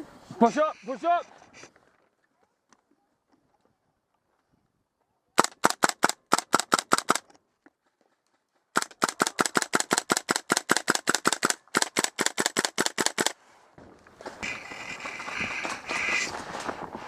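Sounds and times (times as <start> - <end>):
airsoft gun rapid shots: 5.4 - 7.2, 8.8 - 13.4.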